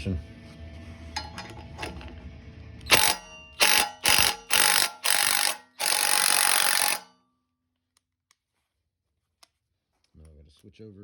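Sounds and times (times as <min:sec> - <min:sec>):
impact wrench hammering: 0:01.2 - 0:02.0, 0:02.9 - 0:07.2.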